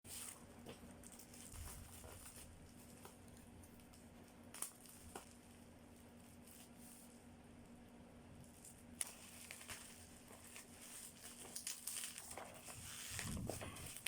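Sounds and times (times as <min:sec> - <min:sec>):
packaging rustling: 0:00.1 - 0:05.5, 0:08.5 - 0:14.0.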